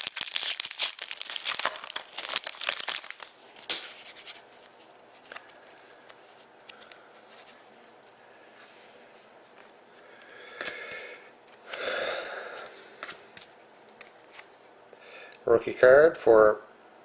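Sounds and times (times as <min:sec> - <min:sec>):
wrapper crinkling and tearing: 0:00.0 - 0:06.1.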